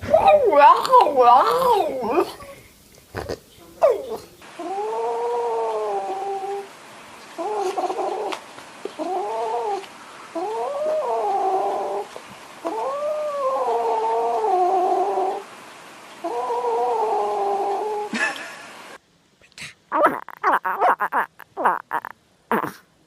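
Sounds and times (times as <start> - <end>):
cat yowling: 4.6 - 6.7, 10.4 - 12.1, 16.2 - 18.1, 19.9 - 22.8.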